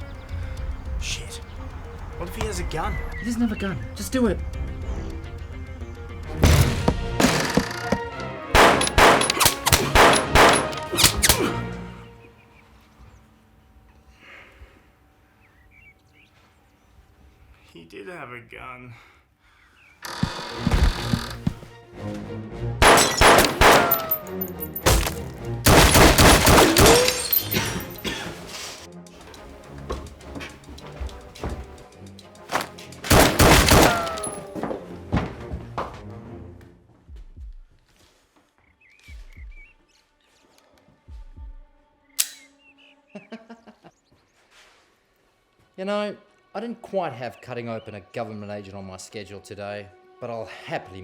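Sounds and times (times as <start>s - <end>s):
background music score: 0.0s - 14.2s, 20.9s - 37.1s
gunshots: 6.4s - 8.0s, 8.6s - 11.6s, 22.8s - 28.1s, 32.5s - 34.4s.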